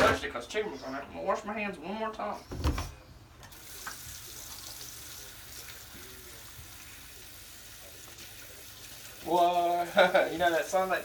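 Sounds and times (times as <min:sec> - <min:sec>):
tap water running: 0:03.4 - 0:11.0.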